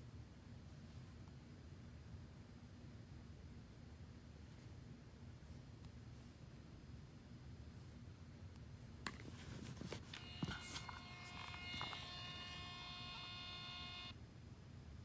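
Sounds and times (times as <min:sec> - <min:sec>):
printer feed motor whining: 0:09.9 - 0:14.2.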